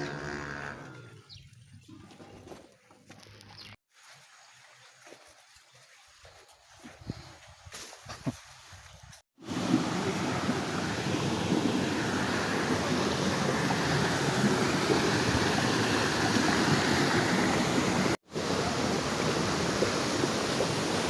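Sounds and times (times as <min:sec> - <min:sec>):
waterfall rushing: 0:09.4 - 0:21.0.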